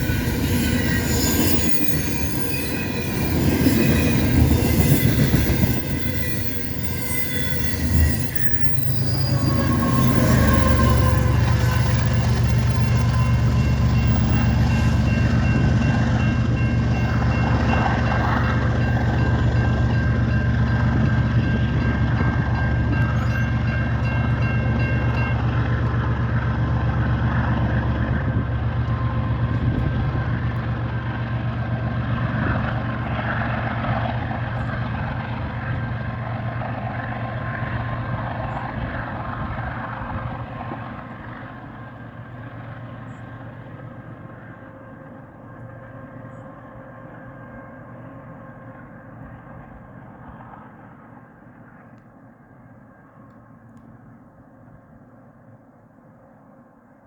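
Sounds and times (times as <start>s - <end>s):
wheel squeal: 0.0s - 21.8s
rumble of train wheels on rail: 0.0s - 57.0s.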